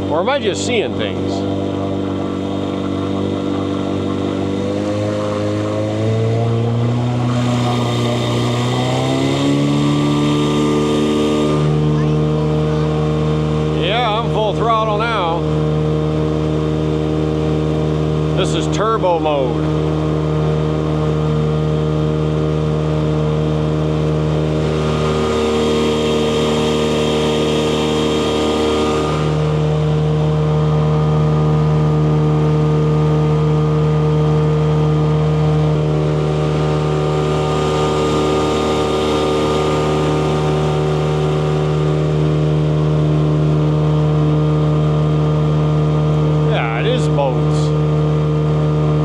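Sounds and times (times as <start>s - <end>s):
motorboat engine at full throttle: 0.0s - 49.0s.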